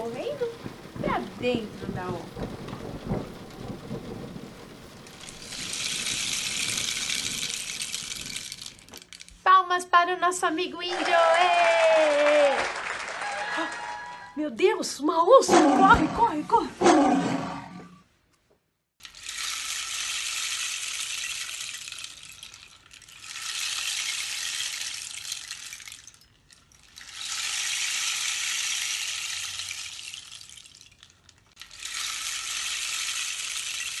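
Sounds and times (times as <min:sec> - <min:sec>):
rain stick grains trickling: 0:00.0 - 0:09.5, 0:19.0 - 0:34.0.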